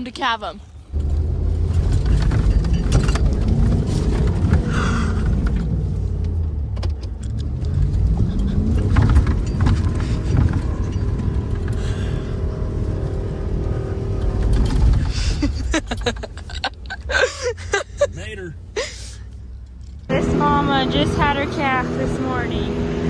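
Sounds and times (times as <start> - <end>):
vehicle engine rumbling: 0.0 - 23.0.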